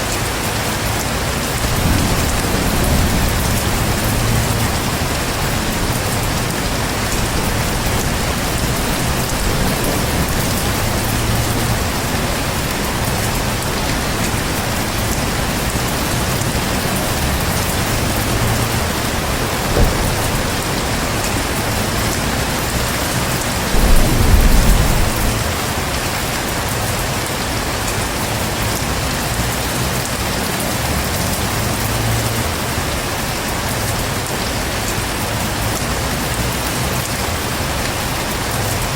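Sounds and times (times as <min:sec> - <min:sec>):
heavy rain hissing: 0:00.0 - 0:38.9
low rumble of thunder: 0:01.3 - 0:27.2.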